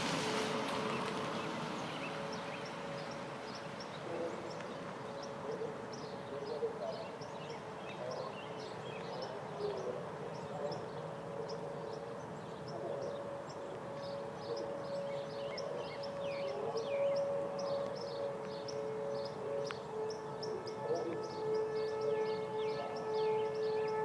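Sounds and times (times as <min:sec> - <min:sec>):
warning siren wailing: 0:09.6 - 0:24.0.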